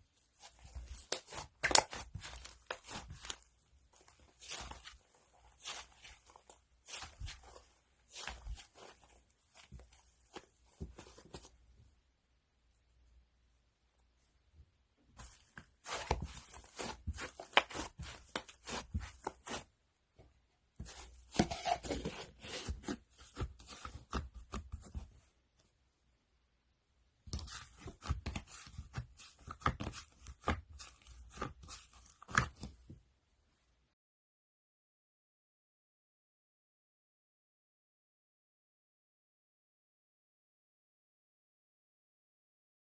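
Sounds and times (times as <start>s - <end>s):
crunchy slime crackling and popping: 0.7s - 3.4s.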